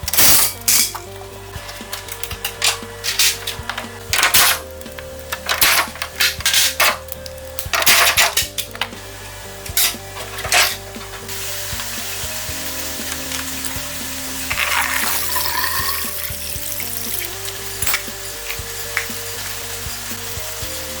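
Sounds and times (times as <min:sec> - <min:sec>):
metal tools clanking: 0:00.0 - 0:09.0, 0:09.6 - 0:11.3, 0:13.1 - 0:19.1
background music: 0:00.0 - 0:21.0
steady hiss: 0:08.5 - 0:21.0.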